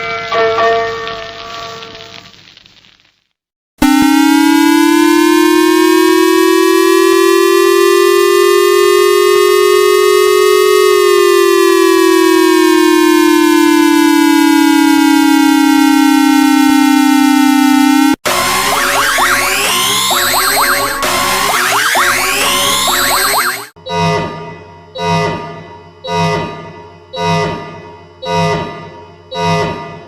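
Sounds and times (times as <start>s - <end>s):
emergency alert alarm tone: 3.8s - 23.8s.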